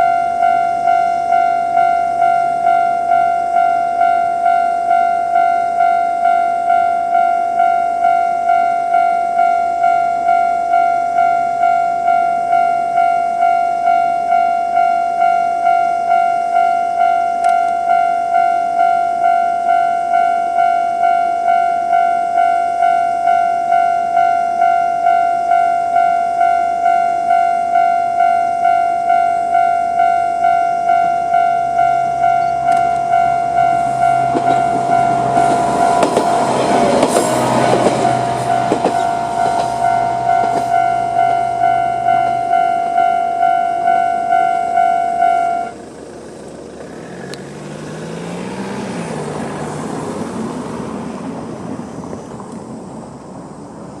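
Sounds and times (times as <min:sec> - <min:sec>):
level crossing warning bell: 0:00.0 - 0:46.7
diesel railcar engine hum: 0:00.0 - 0:54.0
train wheels clicking over rail joints: 0:31.3 - 0:52.8.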